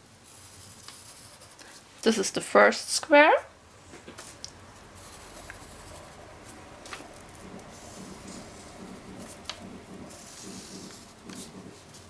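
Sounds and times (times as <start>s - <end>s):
paper sliding hiss: 4.2s - 12.0s.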